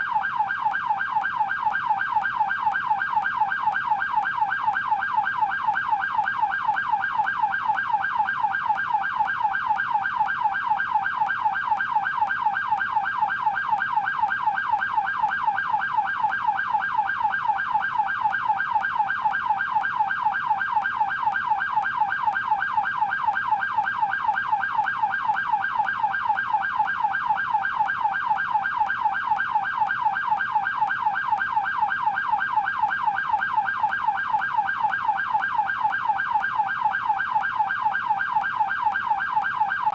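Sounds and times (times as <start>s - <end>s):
police siren yelp: 0.0s - 39.9s.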